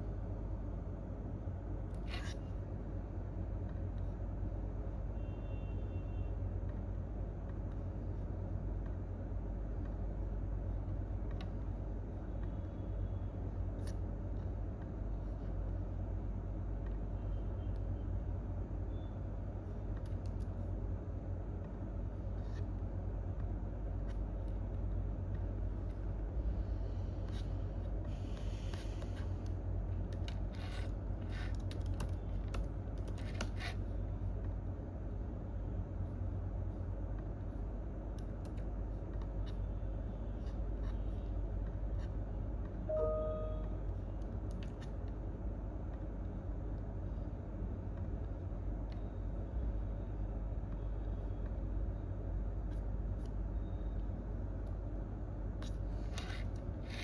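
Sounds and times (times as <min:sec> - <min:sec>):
steady low hum: 0:00.0 - 0:57.0
short pitched tone: 0:42.9 - 0:43.8.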